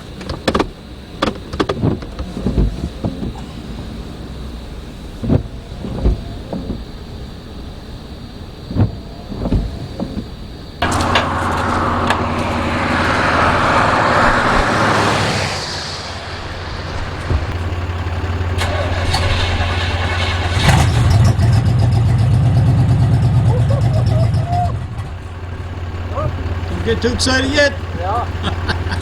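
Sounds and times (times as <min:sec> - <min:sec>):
vehicle engine running: 0:00.0 - 0:29.0
loud hiss: 0:10.4 - 0:21.2.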